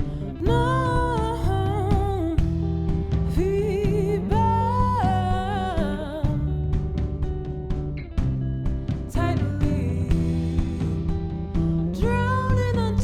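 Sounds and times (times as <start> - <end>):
woman singing: 0.0 - 6.9, 9.1 - 13.0
guitar accompaniment: 0.0 - 13.0.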